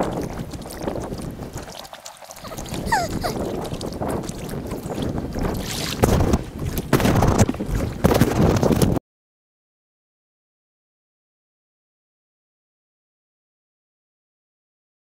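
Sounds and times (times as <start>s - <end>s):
paddle strokes splashing in water: 0.0s - 9.0s
wind on microphone: 0.0s - 9.0s.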